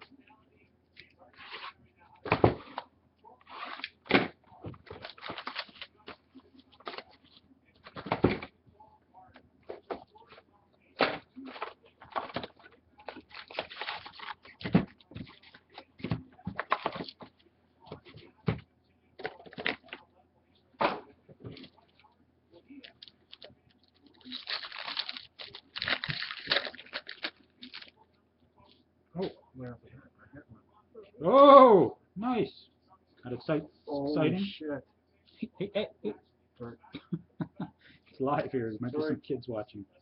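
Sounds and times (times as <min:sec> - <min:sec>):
foil wrappers crinkling and tearing: 0:04.8 - 0:06.2, 0:11.4 - 0:14.7, 0:22.8 - 0:28.0.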